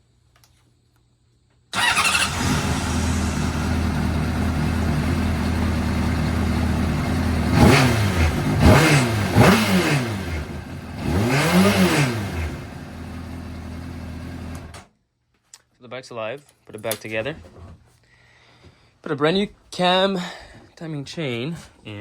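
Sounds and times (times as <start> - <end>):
motorcycle engine idling and revving: 1.8 - 14.8.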